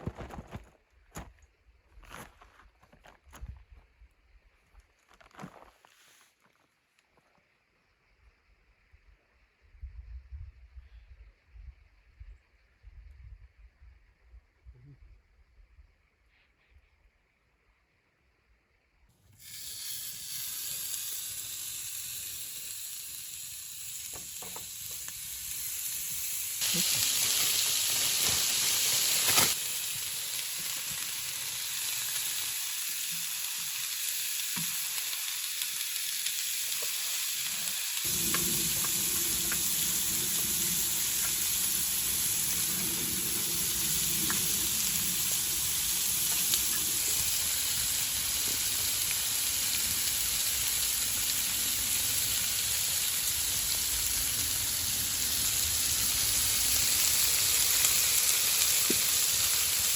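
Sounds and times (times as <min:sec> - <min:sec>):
food sizzling in a pan: 0:19.4 - 0:59.9.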